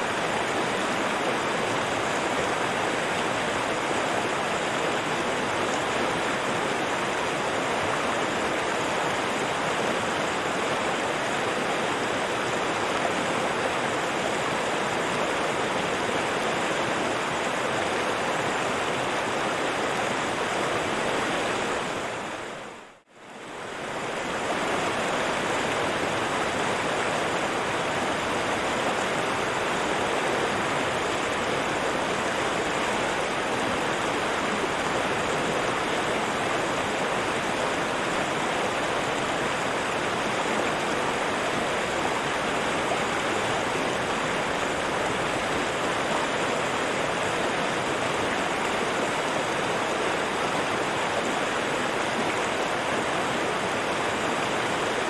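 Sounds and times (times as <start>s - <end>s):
river water rushing and splashing: 0.0s - 55.0s.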